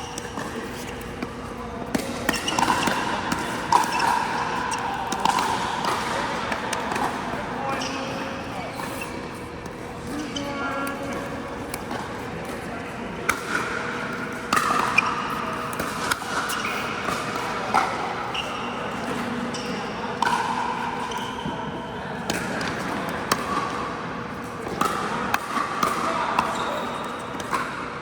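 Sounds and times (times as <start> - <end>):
ball bouncing on court: 0.0 - 9.8.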